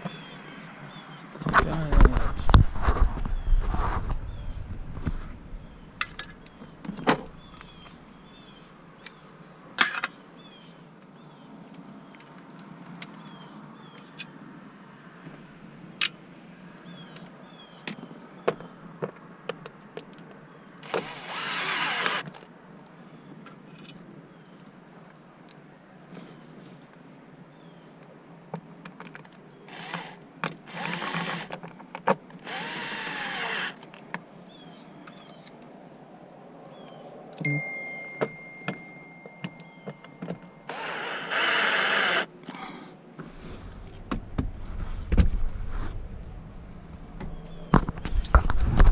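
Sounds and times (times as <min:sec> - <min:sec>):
cordless drill motor whine: 0:20.8 - 0:22.4, 0:29.7 - 0:31.5, 0:32.4 - 0:33.8, 0:40.6 - 0:42.3
sharp clicks and knocks: 0:43.7 - 0:48.9.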